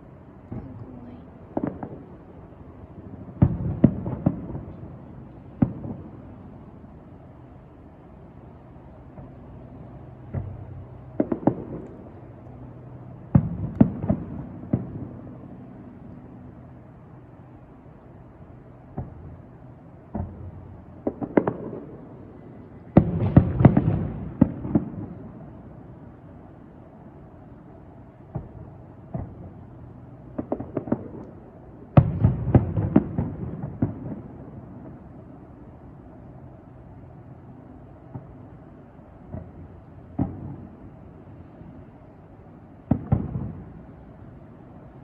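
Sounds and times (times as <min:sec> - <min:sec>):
low steady rumble: 0:00.0 - 0:45.0
fireworks booming: 0:00.4 - 0:06.9, 0:09.0 - 0:12.2, 0:13.3 - 0:15.5, 0:18.8 - 0:25.7, 0:28.3 - 0:29.7, 0:30.3 - 0:35.1, 0:39.2 - 0:41.5, 0:42.8 - 0:44.1
crackling bangs: 0:01.5 - 0:02.5, 0:03.2 - 0:06.6, 0:09.0 - 0:12.3, 0:13.2 - 0:15.2, 0:18.8 - 0:25.7, 0:28.2 - 0:29.6, 0:30.3 - 0:35.1, 0:39.2 - 0:41.0, 0:42.8 - 0:44.0.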